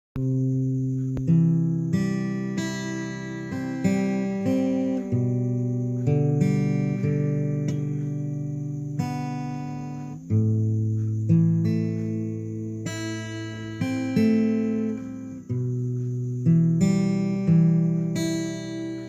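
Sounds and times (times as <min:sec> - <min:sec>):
acoustic guitar picking: 0:00.2 - 0:19.0.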